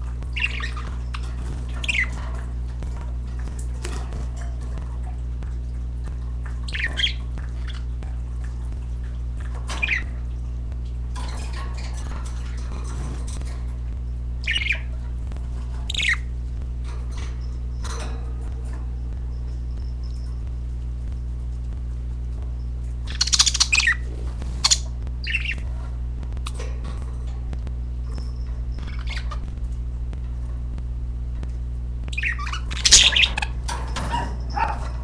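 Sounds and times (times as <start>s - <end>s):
steady low hum: 0.0s - 35.0s
budgerigars squawking and chirping: 0.3s - 2.5s, 6.6s - 8.0s, 9.6s - 10.2s, 14.4s - 16.3s, 23.1s - 25.8s, 28.8s - 29.5s, 32.1s - 35.0s.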